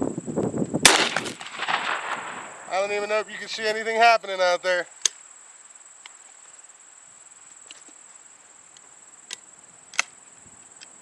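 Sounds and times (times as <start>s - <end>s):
high-pitched insect trill: 0.0s - 11.0s
sharp clicks: 8.8s - 10.2s.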